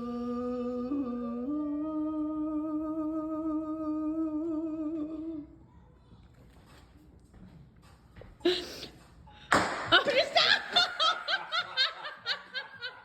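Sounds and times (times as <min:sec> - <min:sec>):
man humming: 0:00.0 - 0:05.5.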